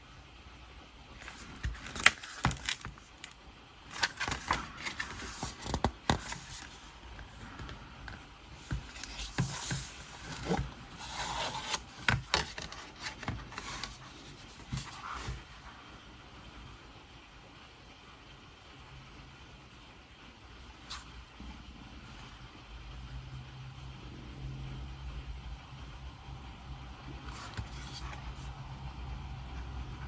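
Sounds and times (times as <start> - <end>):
card and paper rustling: 1.2 - 15.6, 27.1 - 28.5.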